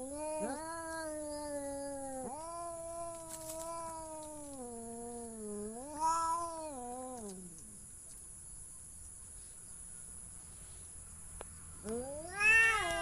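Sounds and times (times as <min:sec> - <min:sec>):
cat yowling: 0:00.0 - 0:07.4, 0:11.8 - 0:13.0.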